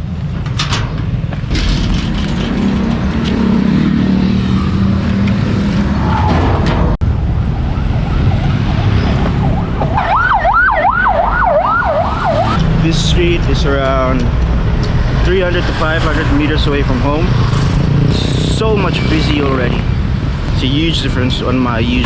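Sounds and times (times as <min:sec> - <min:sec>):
street traffic rumbling: 0:00.0 - 0:22.0
engine droning: 0:01.3 - 0:22.0
siren yelping: 0:07.1 - 0:12.6.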